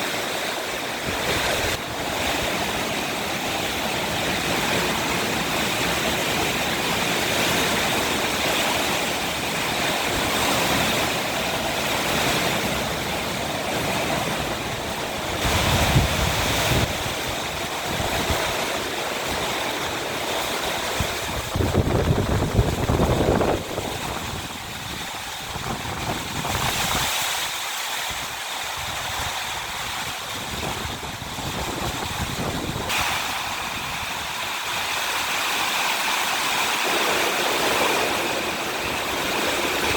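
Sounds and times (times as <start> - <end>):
heavy rain pouring: 0.0 - 39.9
strong wind: 0.0 - 39.9
wind gusts buffeting microphone: 0.8 - 39.9.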